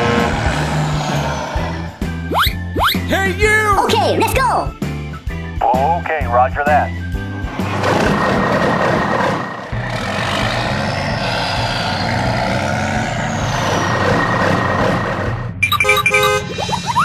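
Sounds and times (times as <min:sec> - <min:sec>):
heavy truck engine running: 0:00.0 - 0:02.7, 0:07.1 - 0:16.4.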